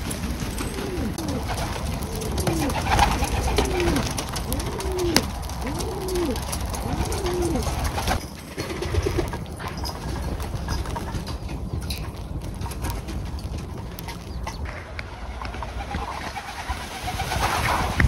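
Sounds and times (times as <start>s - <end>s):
pigeons cooing: 0.0s - 18.0s.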